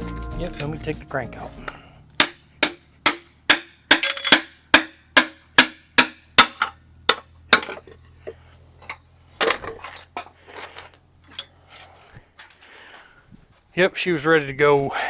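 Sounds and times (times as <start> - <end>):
hammer striking metal: 2.2 - 7.8.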